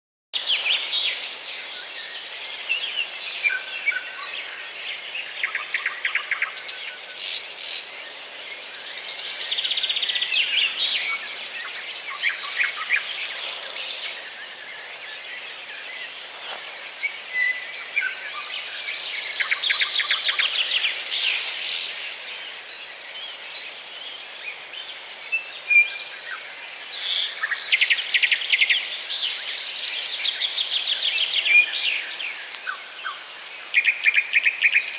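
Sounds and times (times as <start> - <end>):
songbirds chirping and twittering: 0.4 - 34.9.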